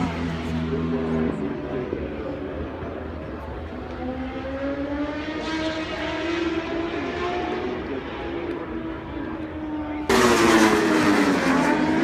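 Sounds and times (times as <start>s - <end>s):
motorcycle engine revving high: 10.0s - 12.0s.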